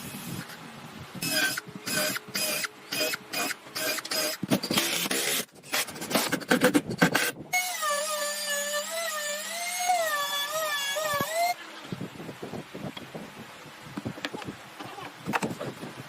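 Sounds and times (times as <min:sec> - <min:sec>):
power tool cutting roughly: 0:01.2 - 0:11.6.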